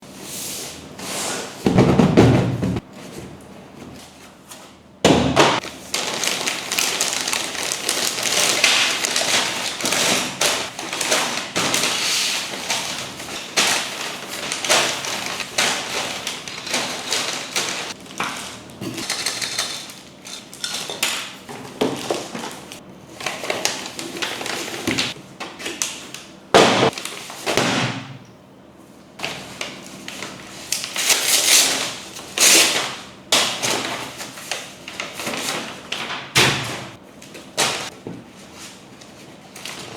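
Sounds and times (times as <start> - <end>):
plastic bags crinkling: 5.6 - 26.1.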